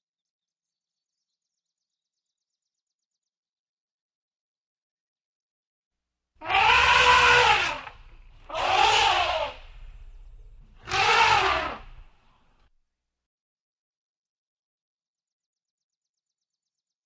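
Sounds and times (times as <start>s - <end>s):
animal calling: 6.4s - 12.4s.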